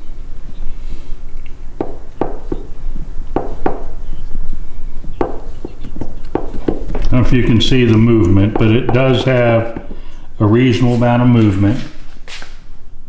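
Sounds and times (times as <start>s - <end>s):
mower blade knocking on spindle: 1.8s - 4.0s, 5.2s - 10.2s.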